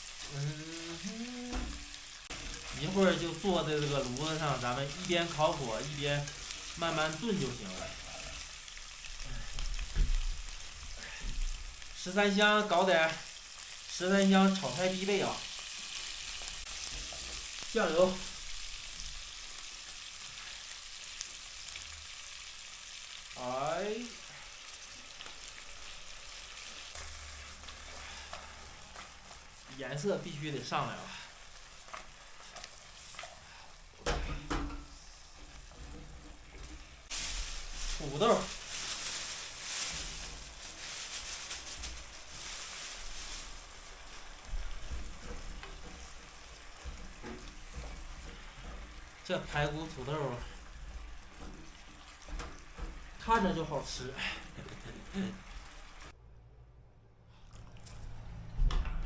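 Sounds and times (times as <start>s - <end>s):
meat sizzling in oil: 0.0s - 56.2s.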